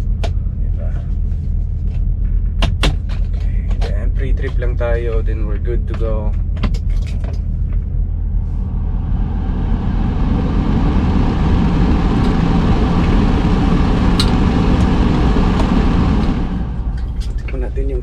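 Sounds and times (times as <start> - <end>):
diesel truck engine idling: 7.4 - 18.0
rushing noise: 7.8 - 18.0.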